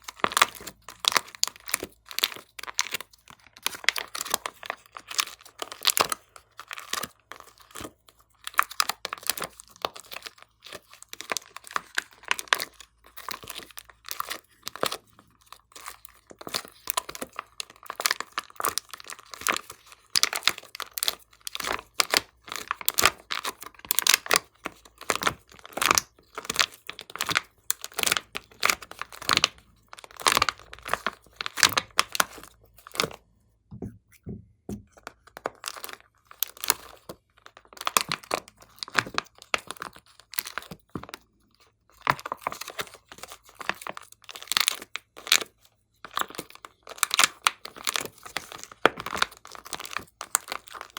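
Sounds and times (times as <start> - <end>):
slime crackling and popping: 0.0 - 33.2, 35.1 - 41.3.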